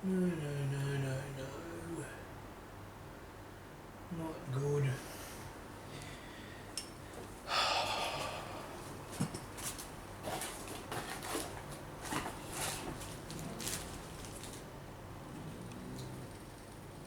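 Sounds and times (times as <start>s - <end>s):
heavy exhale: 7.5s - 8.8s.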